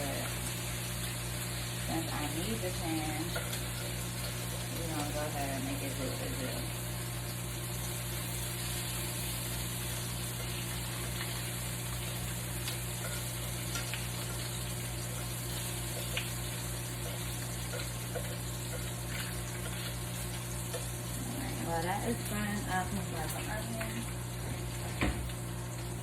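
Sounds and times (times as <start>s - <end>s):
bacon sizzling in a pan: 0.0s - 26.0s.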